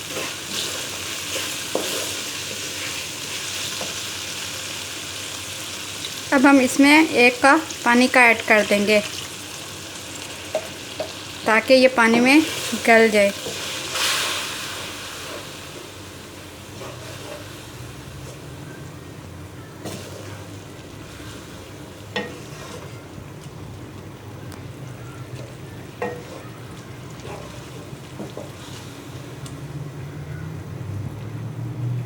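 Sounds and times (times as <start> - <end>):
food sizzling in a pot: 0.0 - 18.6, 19.8 - 23.1, 25.1 - 29.5
spoon stirring: 25.4 - 28.8.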